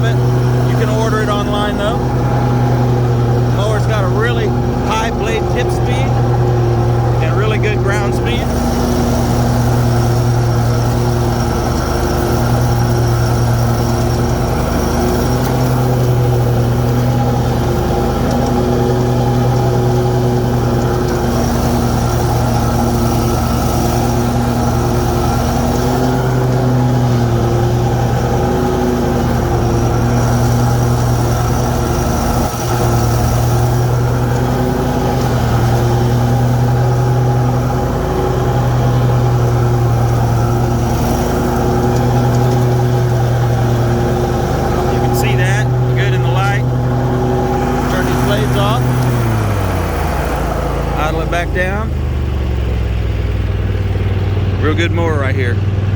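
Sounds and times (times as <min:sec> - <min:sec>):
mower engine running: 0:00.0 - 0:55.9.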